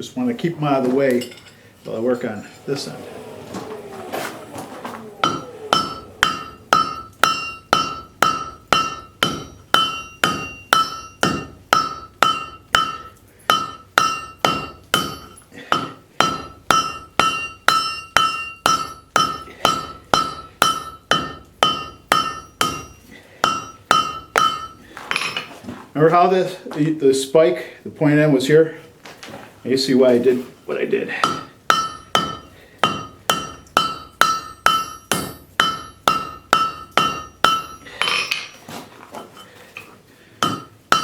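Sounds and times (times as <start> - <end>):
hammer striking metal on anvil: 5.2 - 25.4, 31.2 - 38.5, 40.4 - 41.0.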